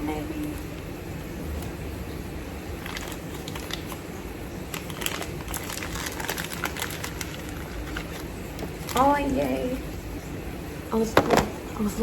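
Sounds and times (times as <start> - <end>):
packaging crinkling and rustling: 2.7 - 9.5.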